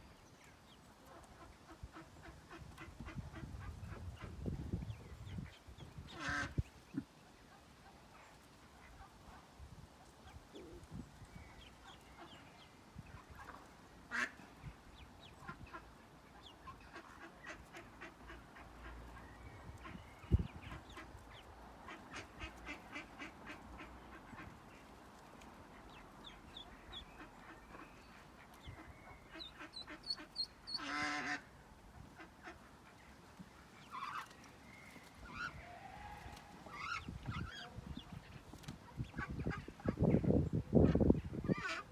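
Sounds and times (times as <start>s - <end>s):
ducklings peeping: 0.1s - 9.4s, 10.0s - 41.9s
mother duck calling: 28.7s - 31.5s.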